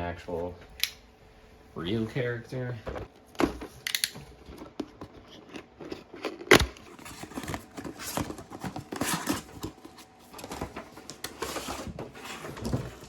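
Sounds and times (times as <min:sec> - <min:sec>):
packaging clicks and scraping: 0:03.1 - 0:13.0
plastic packaging rustling: 0:03.2 - 0:13.0.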